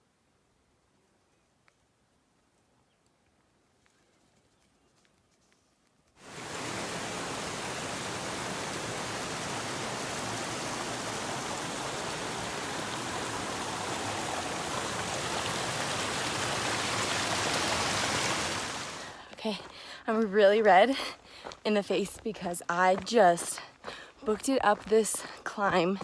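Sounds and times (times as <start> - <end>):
running water rushing: 6.2 - 26.0.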